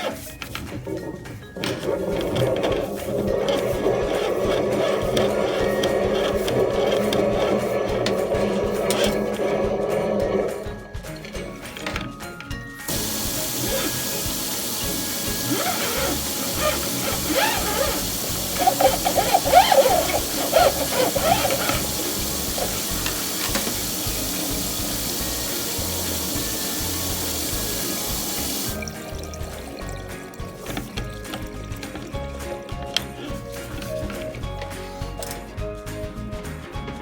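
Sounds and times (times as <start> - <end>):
tap water running into sink: 0.0 - 12.1, 12.9 - 34.7.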